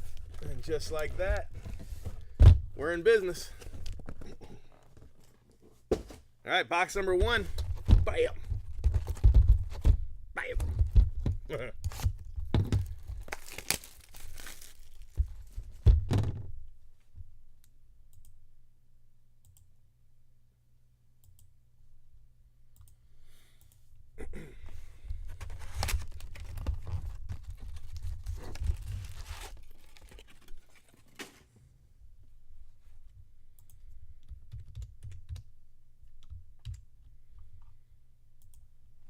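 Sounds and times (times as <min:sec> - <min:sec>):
packaging tearing and crinkling: 0:12.8 - 0:15.6, 0:25.5 - 0:31.2
wrappers and cards clicking: 0:12.8 - 0:15.7, 0:25.2 - 0:31.4.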